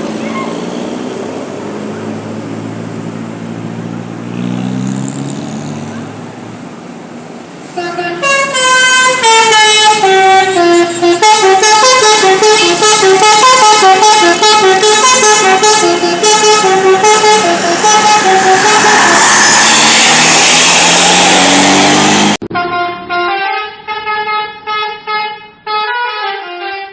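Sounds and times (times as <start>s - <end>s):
bus air horn melody: 7.7s - 20.0s, 22.4s - 26.9s.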